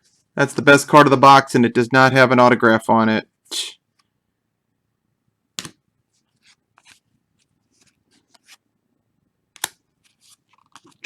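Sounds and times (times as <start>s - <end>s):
card and wrapper swishing: 6.2s - 8.6s, 10.0s - 11.0s.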